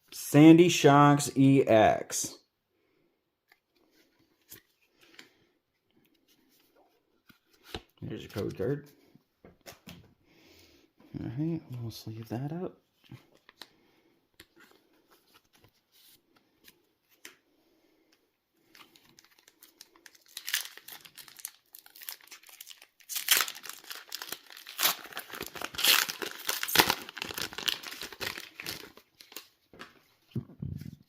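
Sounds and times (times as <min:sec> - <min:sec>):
foil wrapper crinkling and tearing: 0:18.8 - 0:29.6.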